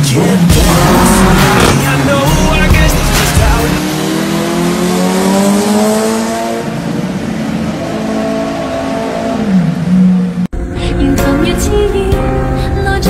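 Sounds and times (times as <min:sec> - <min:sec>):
motorcycle engine accelerating: 0:00.2 - 0:10.5.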